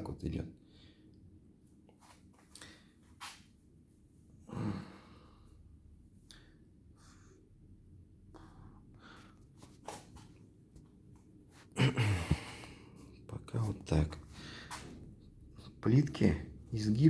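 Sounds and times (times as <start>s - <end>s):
person breathing out heavily: 11.8s - 13.1s.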